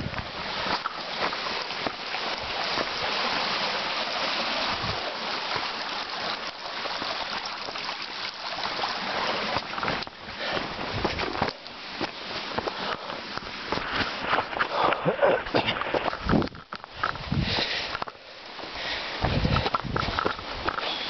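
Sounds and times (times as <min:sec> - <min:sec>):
stream water flowing: 0:00.0 - 0:21.0.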